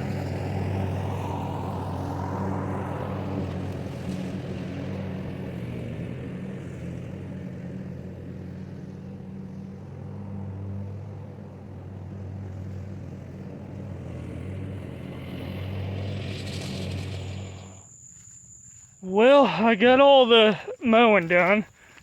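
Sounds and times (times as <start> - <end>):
lawnmower engine running: 0.0 - 17.8.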